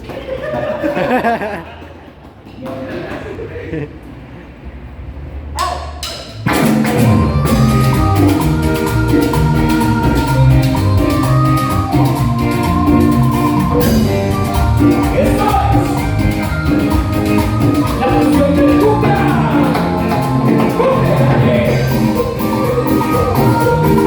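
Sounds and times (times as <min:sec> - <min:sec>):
cumbia band playing live: 0:05.9 - 0:24.0.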